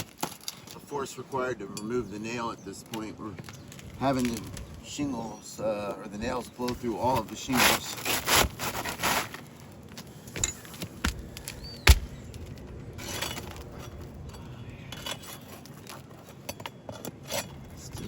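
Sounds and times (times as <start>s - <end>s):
pry bar scraping shingles: 6.2s - 18.0s.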